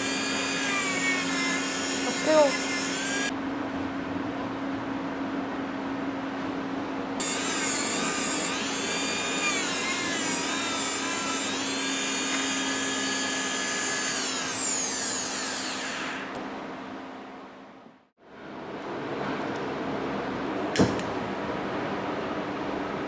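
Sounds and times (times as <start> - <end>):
power tool high whine: 0.0 - 3.3, 7.2 - 16.3
power tool spinning down: 0.0 - 3.3, 7.2 - 16.3.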